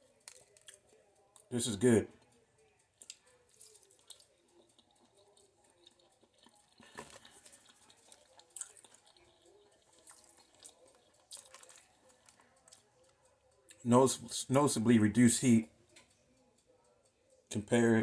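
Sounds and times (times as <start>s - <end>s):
wet mouth chewing clicks: 3.0s - 12.9s.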